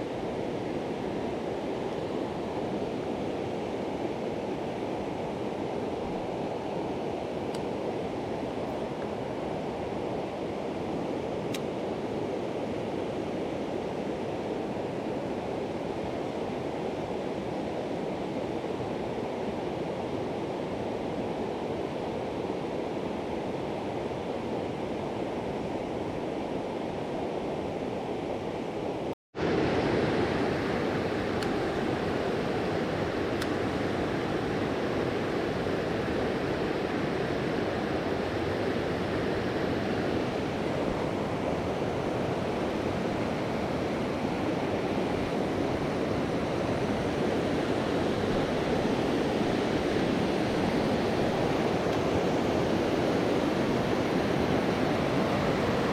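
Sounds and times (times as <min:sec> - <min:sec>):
river water rushing over rocks: 0:37.0 - 0:55.9.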